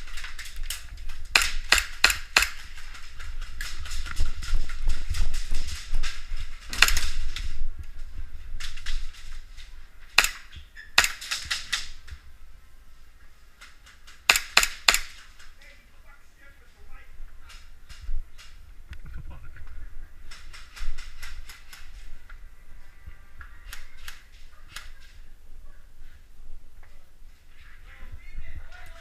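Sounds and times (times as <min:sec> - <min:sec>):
airsoft gun shots: 0:01.3 - 0:02.7, 0:06.7 - 0:07.2, 0:10.1 - 0:11.9, 0:14.2 - 0:15.2.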